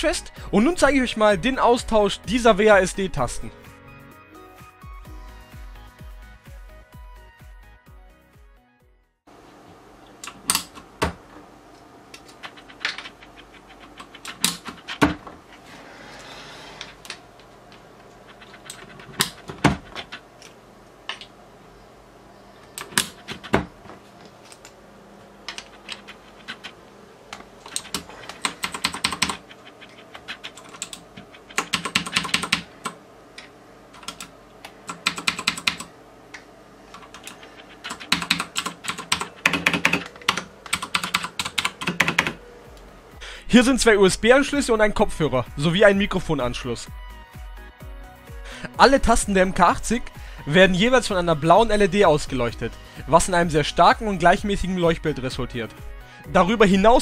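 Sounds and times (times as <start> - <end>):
keyboard keycaps clicking: 12.2 - 15.2, 18.1 - 21.3, 22.8 - 23.7, 25.5 - 26.8, 27.6 - 33.0, 34.0 - 35.9, 37.0 - 42.4
rapid keyboard clicking: 12.2 - 15.2, 18.1 - 20.3, 22.8 - 23.7, 25.5 - 26.8, 27.6 - 33.0, 34.0 - 35.9, 37.0 - 42.4.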